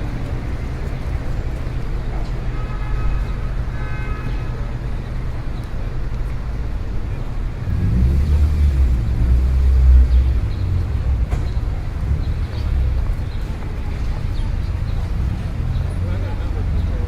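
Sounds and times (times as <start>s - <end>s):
traffic hum: 0.0s - 17.0s
vehicle passing close: 7.6s - 13.0s.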